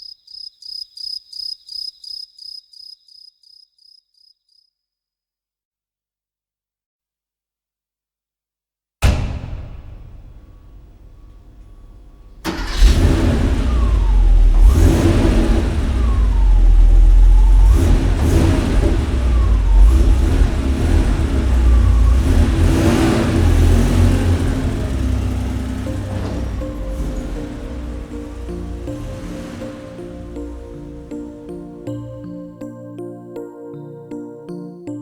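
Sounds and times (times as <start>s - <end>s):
car engine revving: 9.0s - 31.8s.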